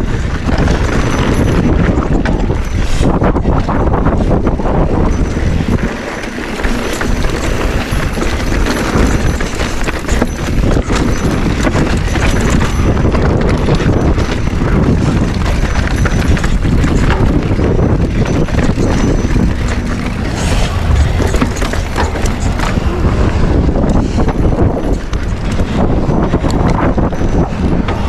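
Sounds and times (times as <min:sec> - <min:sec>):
wind on microphone: 0:00.0 - 0:28.0
bike clattering over rocks: 0:05.4 - 0:23.6.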